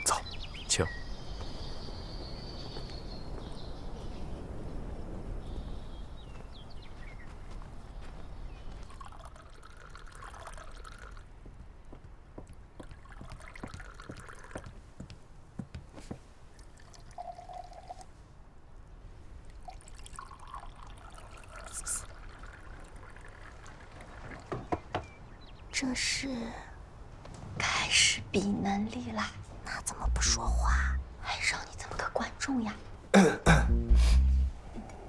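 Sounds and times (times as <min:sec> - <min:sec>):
liquid pouring and trickling: 0:08.8 - 0:11.4, 0:12.9 - 0:14.7, 0:16.5 - 0:18.2, 0:19.4 - 0:24.7.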